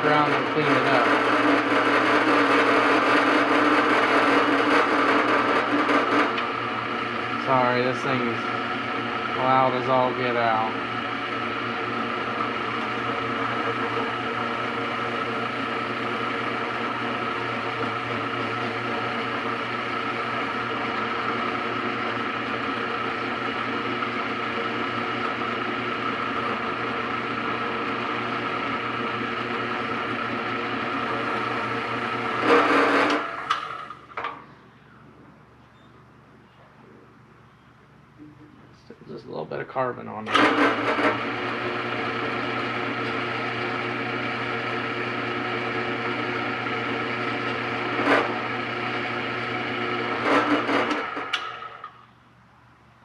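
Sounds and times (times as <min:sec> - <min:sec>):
drill press motor whine: 0:00.0 - 0:36.0, 0:40.2 - 0:52.4.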